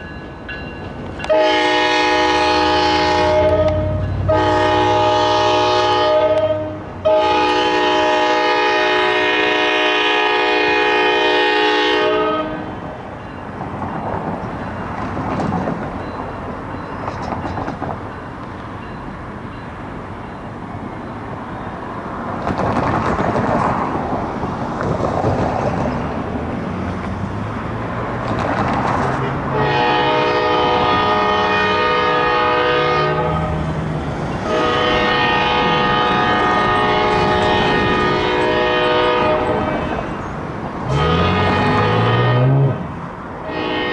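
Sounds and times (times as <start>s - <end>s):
passing train rumble and clatter: 0.0s - 43.9s
locomotive air horn: 1.2s - 12.8s, 29.5s - 33.6s, 34.4s - 40.1s, 40.9s - 43.9s.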